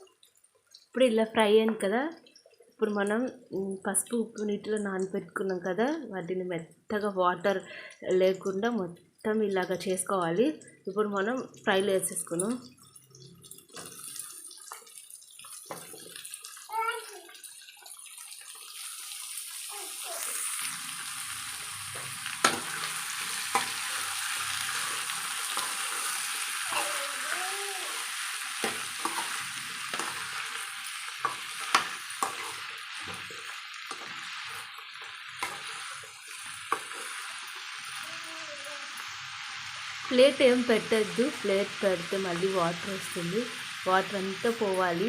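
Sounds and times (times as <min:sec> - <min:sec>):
vegetables sizzling in hot oil: 0:00.0 - 0:06.0, 0:07.3 - 0:45.0.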